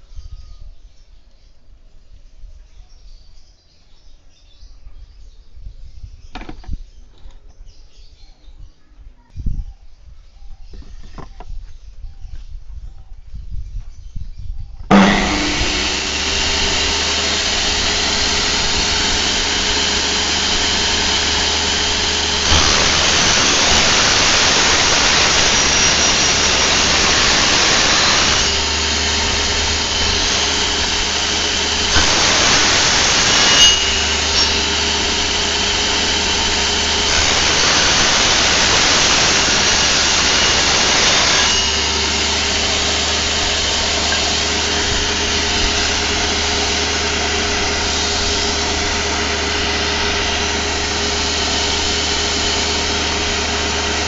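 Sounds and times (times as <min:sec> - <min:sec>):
saw blade cutting wood: 0:14.9 - 0:54.0
table saw motor running: 0:14.9 - 0:54.0.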